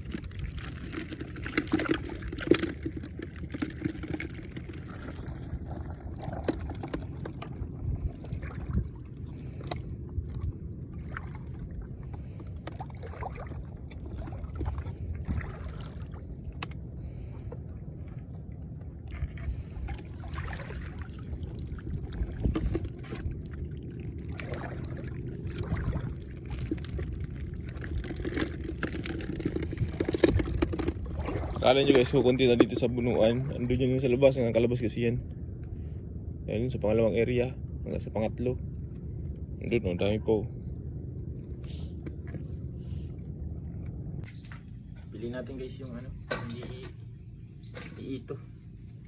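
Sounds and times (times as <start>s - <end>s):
sea water sloshing and splashing: 0.0s - 36.0s
steady low rumble: 0.0s - 49.0s.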